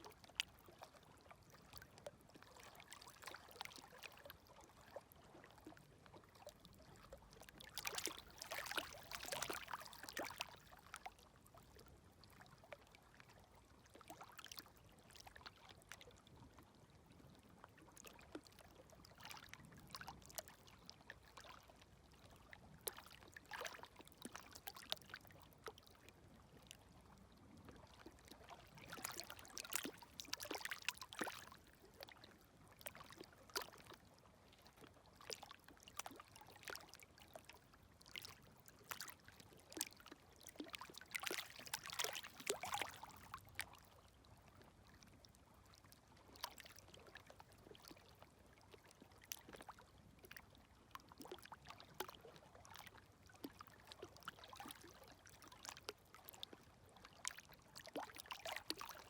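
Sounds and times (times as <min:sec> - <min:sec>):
water trickling over pebbles: 0:00.1 - 0:59.0
small waves lapping on stony shore: 0:02.3 - 0:11.0, 0:22.2 - 0:26.8, 0:27.6 - 0:44.1, 0:57.3 - 0:59.0.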